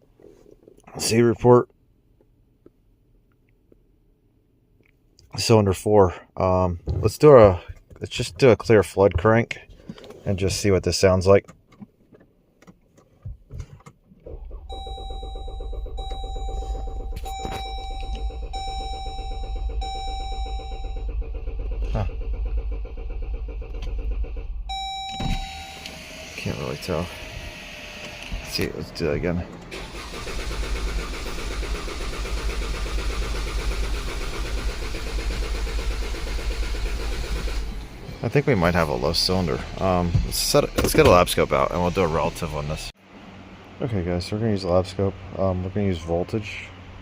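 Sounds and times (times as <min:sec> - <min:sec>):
engine starter cranking: 0:14.2 - 0:28.8, 0:29.5 - 0:38.0
vehicle warning chime: 0:14.5 - 0:21.3, 0:24.7 - 0:27.0
clicks: 0:16.0 - 0:18.4.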